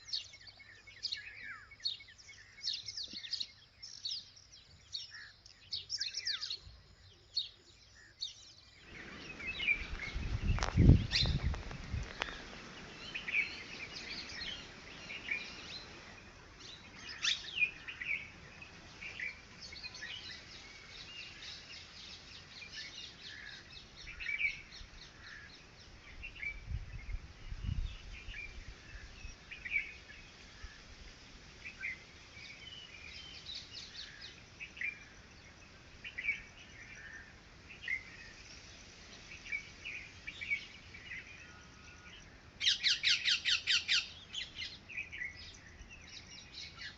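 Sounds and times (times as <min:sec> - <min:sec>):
birds chirping: 0:00.0 - 0:46.9
bird trills: 0:42.6 - 0:44.6.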